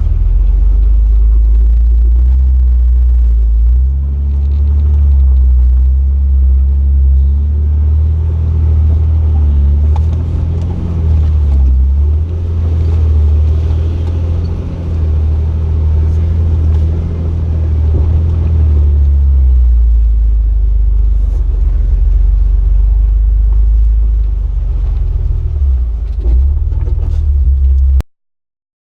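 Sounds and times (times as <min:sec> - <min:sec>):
car engine rumbling at low revs: 0:00.0 - 0:28.0.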